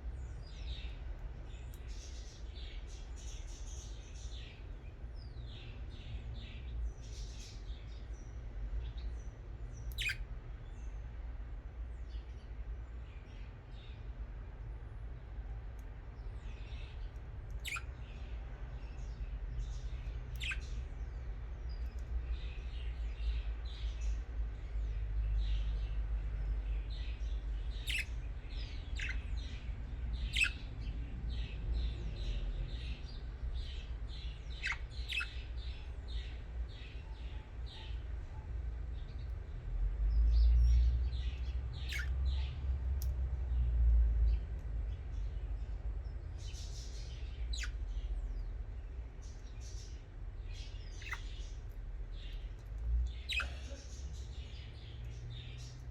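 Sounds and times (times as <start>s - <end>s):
budgerigars chirping: 9.9s - 10.2s, 16.8s - 18.1s, 20.3s - 20.8s, 27.0s - 38.0s, 40.6s - 42.6s, 46.4s - 48.4s, 49.2s - 55.8s.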